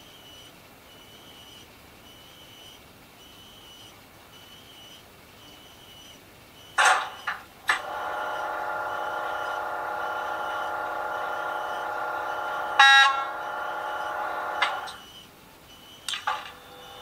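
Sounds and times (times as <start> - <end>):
electric hum from small speaker: 0.0 - 17.0
loud horn toot: 12.0 - 14.3.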